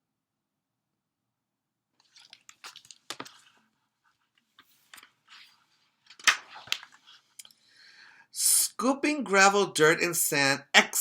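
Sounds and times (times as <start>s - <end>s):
book pages turning: 2.0s - 7.4s.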